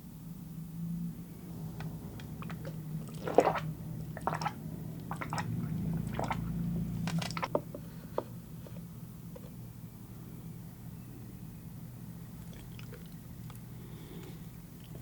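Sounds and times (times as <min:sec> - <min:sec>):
sharp wet clicks: 0:01.8 - 0:06.5, 0:12.4 - 0:15.0
wet chewing and squishing: 0:01.8 - 0:07.5, 0:12.4 - 0:15.0.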